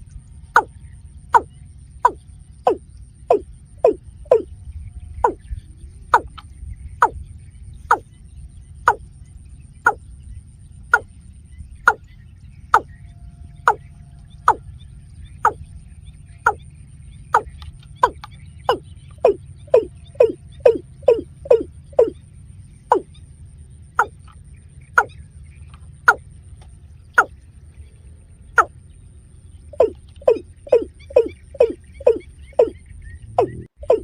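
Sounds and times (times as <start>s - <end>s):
low rumble: 0.0s - 34.0s
bird calling sharp notes: 0.6s - 4.5s, 5.1s - 7.2s, 7.9s - 8.1s, 8.9s - 9.1s, 11.9s - 14.7s, 16.2s - 16.7s, 17.3s - 26.3s, 29.7s - 34.0s.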